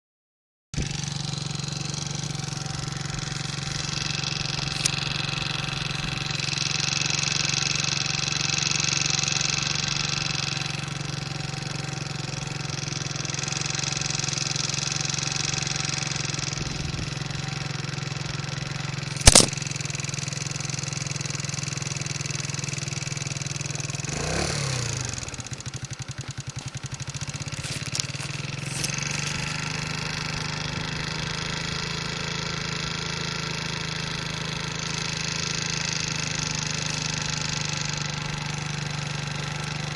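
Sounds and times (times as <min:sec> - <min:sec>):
vehicle humming: 0:00.8 - 0:39.9
brake squeal: 0:02.3 - 0:09.5, 0:23.3 - 0:39.9
sharp click: 0:19.1 - 0:19.6.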